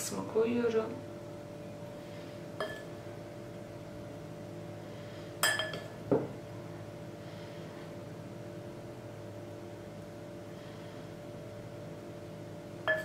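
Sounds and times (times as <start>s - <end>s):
kitchenware clinking: 2.6s - 2.9s, 5.4s - 5.9s.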